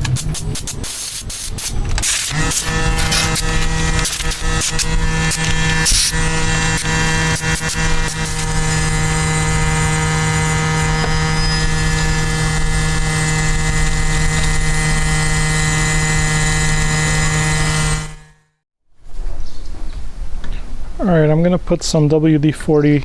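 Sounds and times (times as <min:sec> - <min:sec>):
air compressor running: 0:00.0 - 0:18.4.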